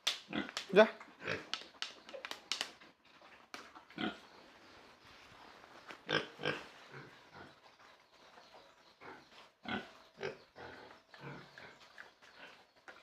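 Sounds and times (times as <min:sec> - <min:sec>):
pigs grunting: 0:01.1 - 0:01.5, 0:04.0 - 0:04.2, 0:06.0 - 0:07.6, 0:08.9 - 0:12.7.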